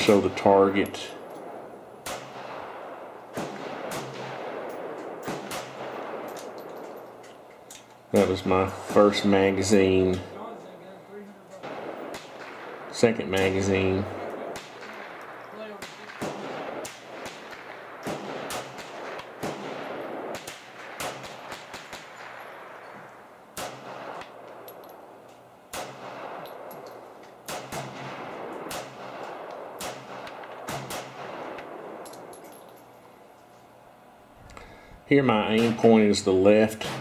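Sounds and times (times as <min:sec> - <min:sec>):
other gunfire: 0:00.0 - 0:07.1, 0:11.2 - 0:25.0, 0:34.5 - 0:36.2
pistol shots echoing: 0:00.0 - 0:33.0, 0:35.3 - 0:37.0.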